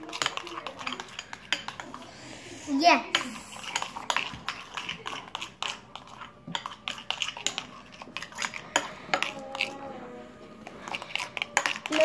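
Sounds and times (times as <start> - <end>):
spoon stirring in a bowl: 0.0 - 12.0.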